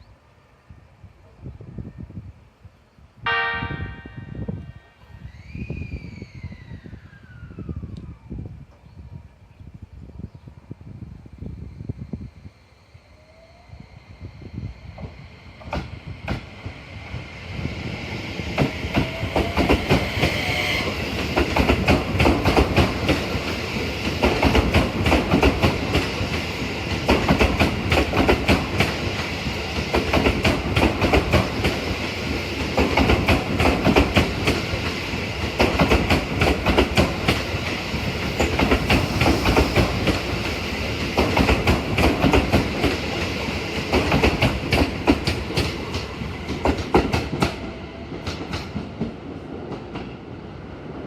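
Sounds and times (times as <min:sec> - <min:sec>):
train wheels clacking over rail joints: 0:21.2 - 0:49.2.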